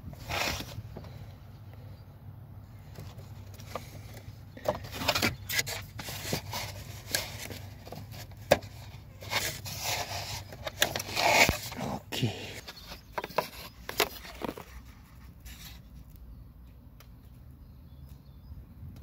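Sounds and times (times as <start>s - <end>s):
hand tools clicking and scraping: 3.0s - 14.8s.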